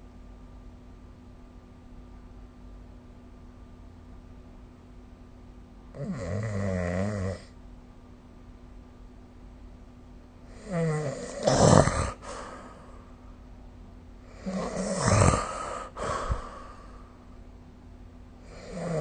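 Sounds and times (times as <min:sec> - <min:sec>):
faint steady hum: 0:00.0 - 0:19.0
person snoring: 0:06.0 - 0:07.5, 0:10.5 - 0:13.0, 0:14.3 - 0:17.1, 0:18.4 - 0:19.0.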